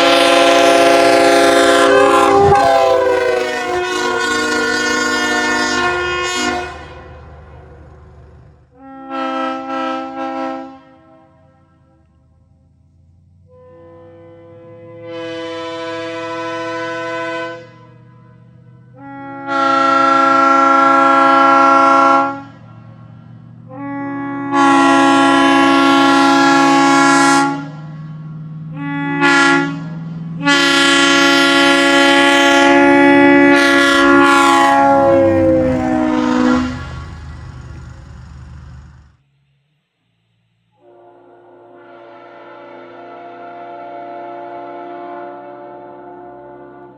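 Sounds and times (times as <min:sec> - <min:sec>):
locomotive air horn blasts: 0:00.0 - 0:12.0, 0:13.5 - 0:18.2, 0:18.9 - 0:22.7, 0:23.7 - 0:28.1, 0:28.7 - 0:39.2, 0:40.8 - 0:46.9.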